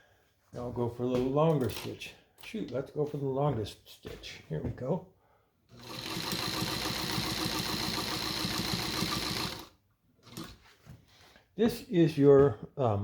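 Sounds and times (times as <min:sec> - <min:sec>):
sewing machine sewing: 0:05.7 - 0:10.6.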